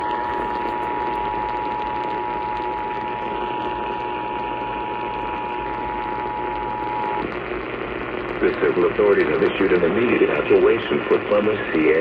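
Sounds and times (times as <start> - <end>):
radio receiver hiss and hum: 0.0 - 12.0.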